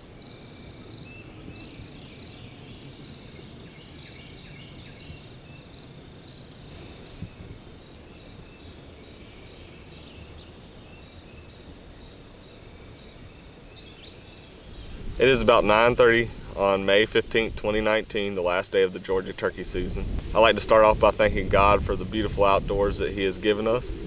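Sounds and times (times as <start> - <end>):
insect trill: 0.0 - 14.8
faint bird calls: 0.0 - 15.1.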